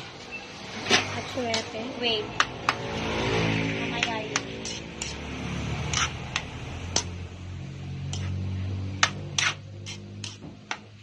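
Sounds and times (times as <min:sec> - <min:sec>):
utensils tapping cookware: 0:03.9 - 0:07.2, 0:08.0 - 0:11.0.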